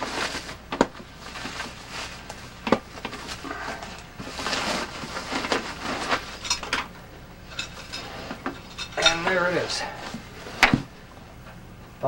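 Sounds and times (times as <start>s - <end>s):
packaging rustling and crinkling: 0.0s - 6.9s.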